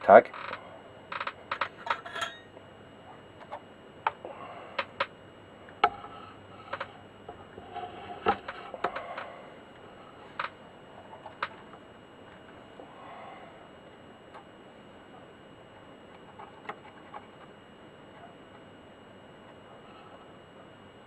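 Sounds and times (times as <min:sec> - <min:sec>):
small tools clicking and tapping: 0:00.5 - 0:02.5.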